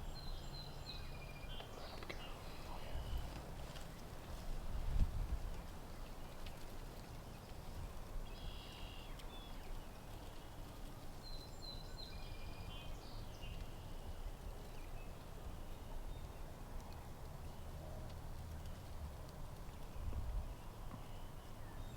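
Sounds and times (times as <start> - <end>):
wind rumble on microphone: 0.0 - 8.4, 12.4 - 20.9
faint high bird calls: 8.4 - 9.7.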